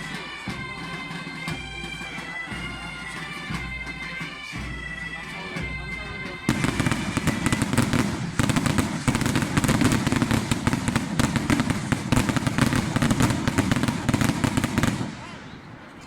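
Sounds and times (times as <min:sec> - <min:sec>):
firecrackers crackling: 0:04.2 - 0:16.0.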